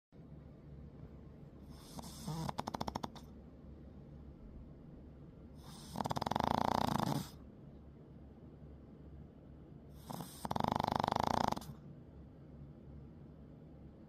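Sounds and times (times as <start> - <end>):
pet snoring: 1.6 - 3.4, 5.6 - 7.4, 9.9 - 11.8.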